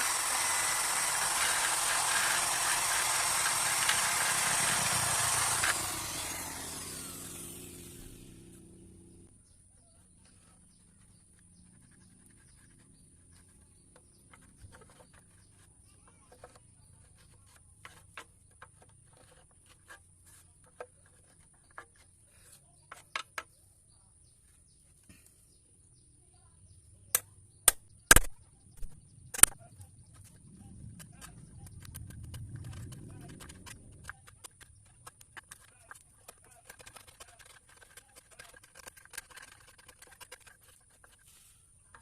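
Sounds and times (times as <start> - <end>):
tools tapping on wood: 22.9 - 23.5.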